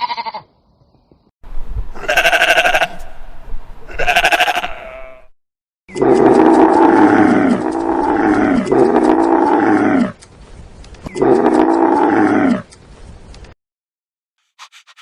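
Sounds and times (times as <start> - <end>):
cow mooing: 4.0 - 5.3, 5.9 - 10.2, 11.1 - 12.6.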